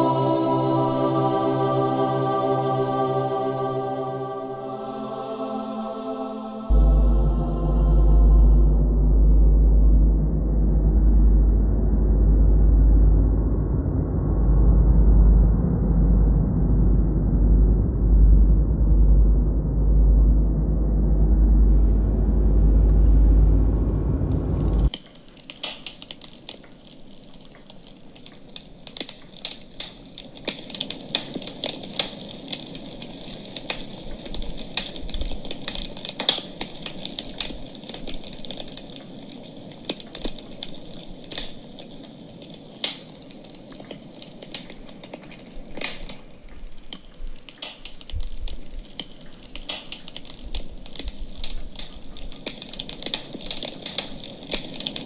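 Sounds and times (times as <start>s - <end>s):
loud low rumble: 6.7s - 24.9s
campfire crackling and snapping: 24.1s - 55.0s.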